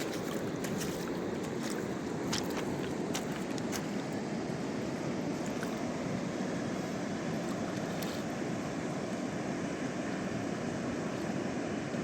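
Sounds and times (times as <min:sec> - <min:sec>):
small water splashes: 0:00.0 - 0:04.2
river rushing: 0:00.0 - 0:12.0.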